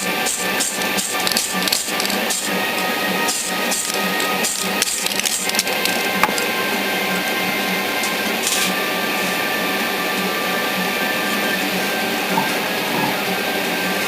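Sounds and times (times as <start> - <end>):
rapid ticks: 0.4 - 6.5.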